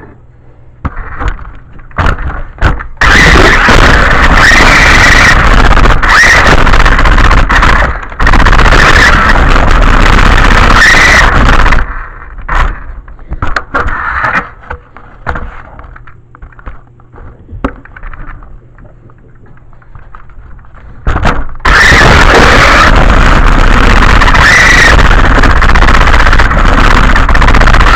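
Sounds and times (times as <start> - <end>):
rc car motor whine: 3.0 - 11.9, 21.6 - 27.9.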